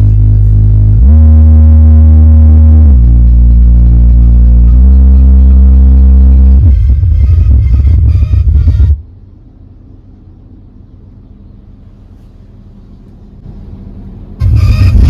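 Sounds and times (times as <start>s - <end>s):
bass-heavy electronic music: 0.0s - 9.1s, 14.4s - 15.0s
low steady rumble: 0.0s - 15.0s.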